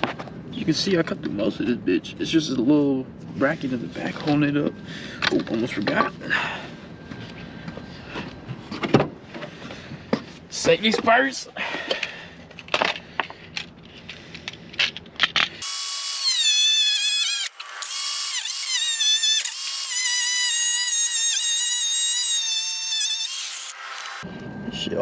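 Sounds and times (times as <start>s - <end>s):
power tool motor whine: 15.6s - 24.2s.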